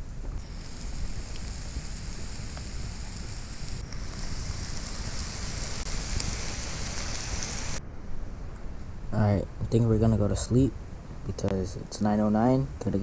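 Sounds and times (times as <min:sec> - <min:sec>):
steady rain falling: 0:00.0 - 0:07.8.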